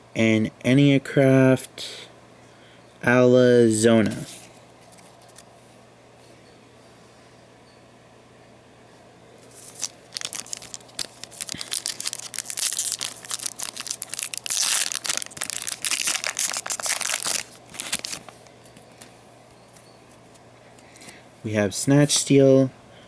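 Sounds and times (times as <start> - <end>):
foil wrapper tearing and crinkling: 9.5 - 19.1.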